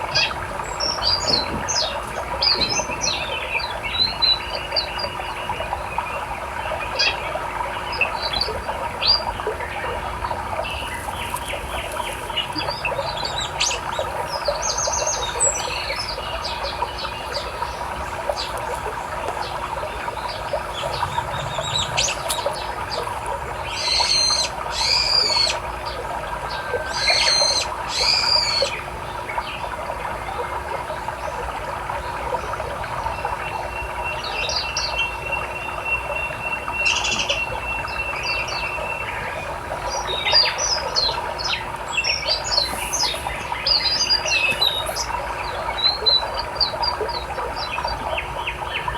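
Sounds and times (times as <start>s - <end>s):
birds chirping: 0.0s - 29.8s, 32.1s - 48.9s
loud bird calls: 10.0s - 29.3s, 33.1s - 48.9s
river rushing: 20.1s - 24.9s.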